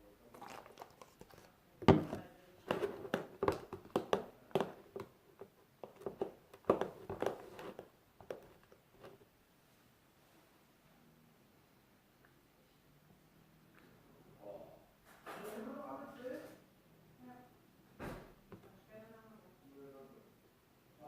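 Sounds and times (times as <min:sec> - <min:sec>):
slime squishing: 0:00.3 - 0:05.1.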